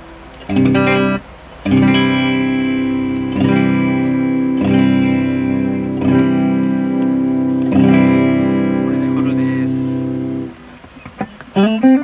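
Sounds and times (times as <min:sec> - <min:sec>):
electric guitar chords strummed: 0:00.0 - 0:12.0.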